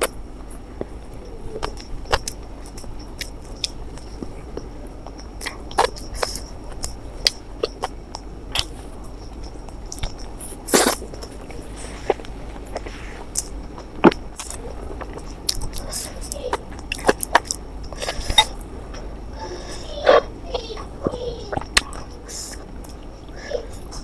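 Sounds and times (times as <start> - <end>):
chewing and mouth smacks: 1.6 - 18.6.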